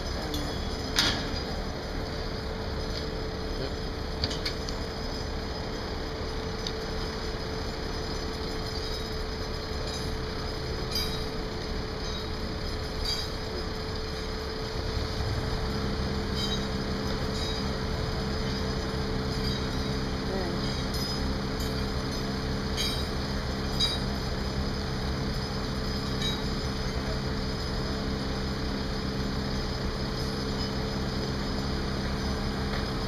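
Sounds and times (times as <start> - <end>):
light metallic clinks: 0.0 - 14.2
construction machinery humming: 0.0 - 33.0
low engine hum: 0.0 - 33.0.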